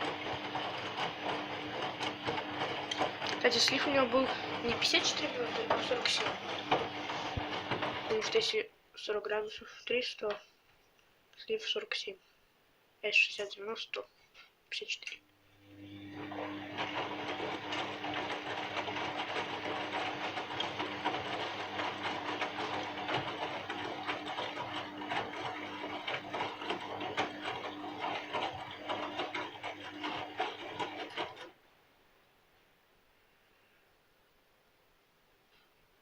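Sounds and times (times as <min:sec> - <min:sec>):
tumbling load rattling: 0:00.0 - 0:08.5
washing machine motor hum: 0:00.0 - 0:08.6, 0:15.6 - 0:31.6.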